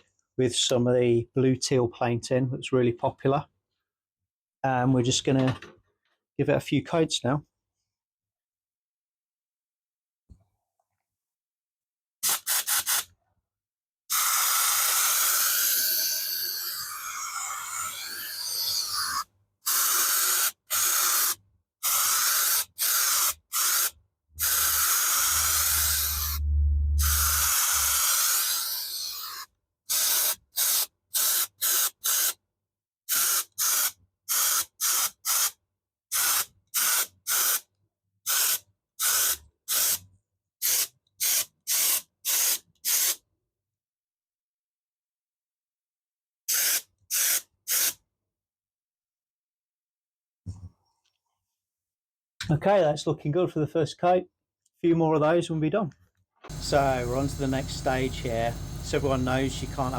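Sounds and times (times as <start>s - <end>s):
spray gun hissing: 19.7s - 26.4s, 27.0s - 32.3s, 56.5s - 59.9s
low hum: 26.1s - 27.5s, 56.5s - 59.9s.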